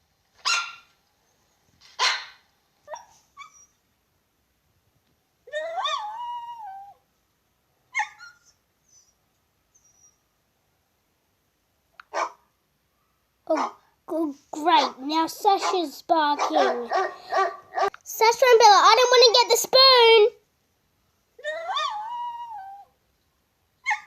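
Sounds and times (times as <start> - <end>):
dog barking: 0.4 - 0.9, 2.0 - 3.2, 12.1 - 12.4, 13.5 - 13.9, 15.5 - 18.0
dog whining: 2.9 - 3.8, 5.5 - 7.0, 7.9 - 10.3, 21.4 - 23.0.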